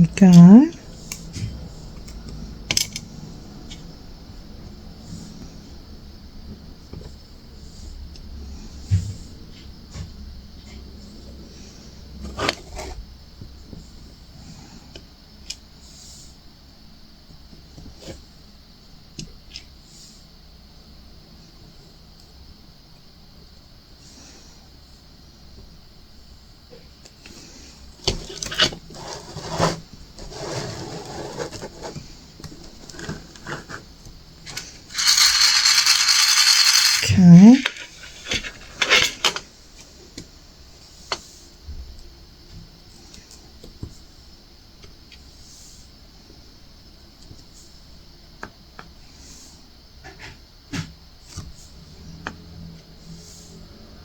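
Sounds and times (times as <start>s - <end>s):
resin drills rattling in a tray: 34.5s - 39.5s.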